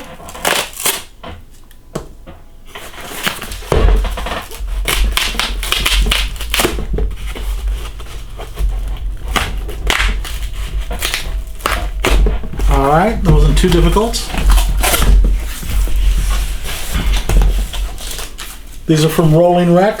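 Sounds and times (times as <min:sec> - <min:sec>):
cardboard ripping and crackling: 0:00.0 - 0:01.1, 0:02.7 - 0:20.0
low handling bumps: 0:06.4 - 0:20.0.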